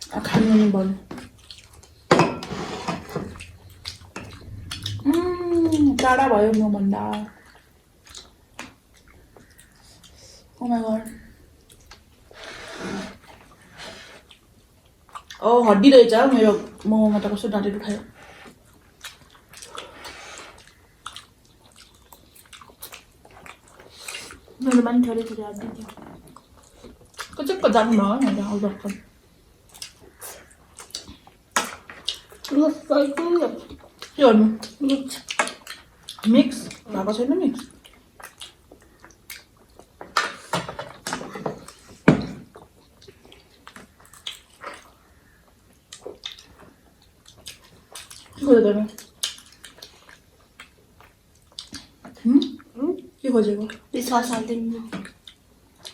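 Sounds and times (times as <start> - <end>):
person chewing: 1.2 - 2.0, 3.2 - 6.2, 7.2 - 10.3, 14.2 - 15.4, 18.4 - 24.7, 25.9 - 27.4, 29.6 - 32.6, 37.6 - 40.6, 41.6 - 52.0.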